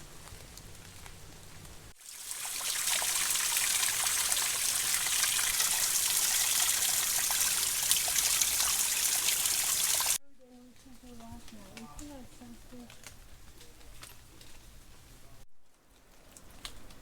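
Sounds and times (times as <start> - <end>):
stream trickling over rocks: 2.0 - 10.2.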